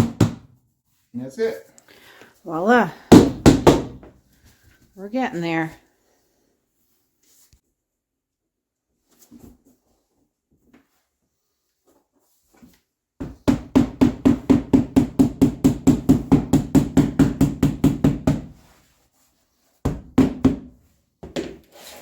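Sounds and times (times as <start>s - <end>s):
knocks tapping flooring planks: 3.1s - 4.1s, 13.2s - 18.6s.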